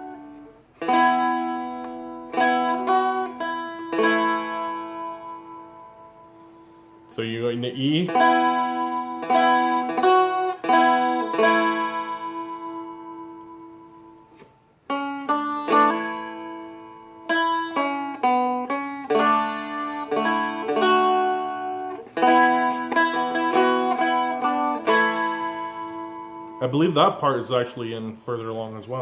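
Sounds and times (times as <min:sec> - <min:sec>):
dulcimer picked note by note: 0:19.3 - 0:26.7.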